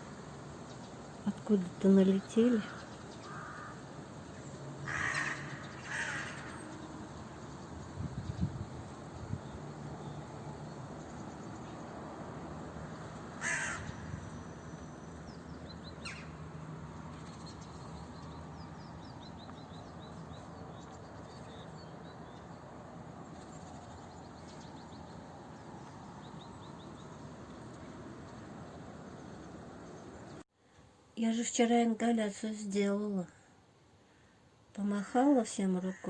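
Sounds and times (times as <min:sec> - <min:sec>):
crows cawing: 0:02.7 - 0:03.9, 0:04.8 - 0:06.8, 0:13.3 - 0:14.4.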